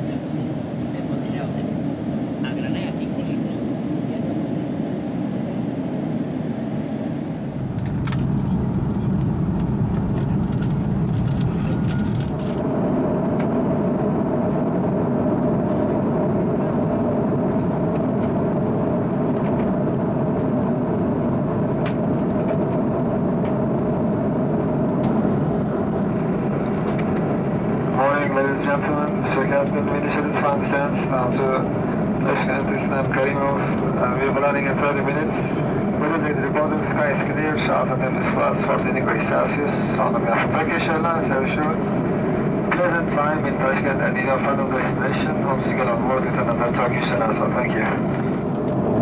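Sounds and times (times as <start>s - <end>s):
aircraft cabin engine rumble: 7.1s - 49.0s
steady hum: 7.3s - 12.8s
light clicks and rustles: 7.4s - 12.7s.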